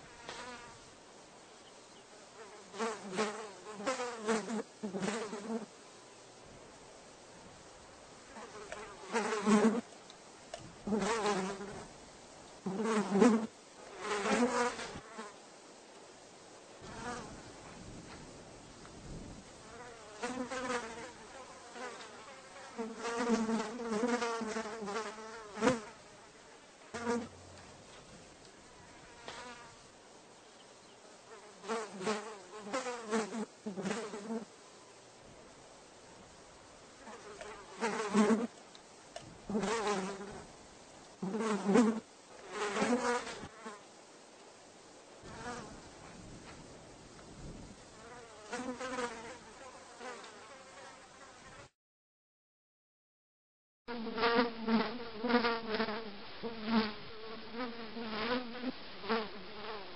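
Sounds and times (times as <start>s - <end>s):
housefly buzzing: 0.0s - 0.8s, 8.2s - 9.9s, 19.6s - 28.0s, 28.7s - 29.9s, 31.3s - 34.5s, 37.0s - 38.5s, 41.2s - 43.8s, 48.0s - 51.7s.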